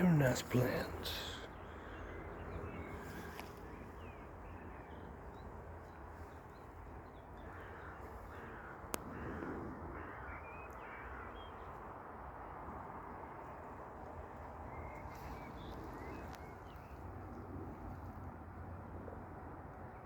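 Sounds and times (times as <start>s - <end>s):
birds calling: 0.0s - 17.7s
harsh caw-like calls: 7.4s - 11.6s.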